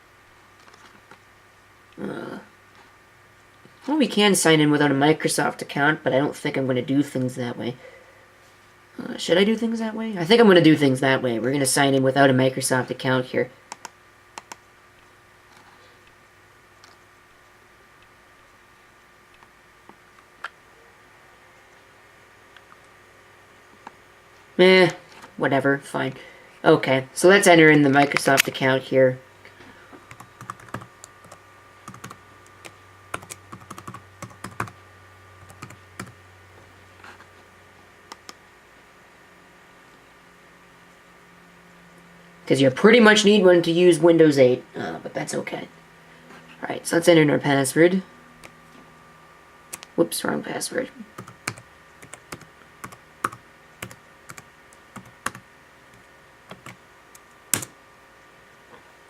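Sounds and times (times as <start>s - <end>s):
keyboard typing clicks: 13.7s - 14.6s, 57.5s - 57.7s.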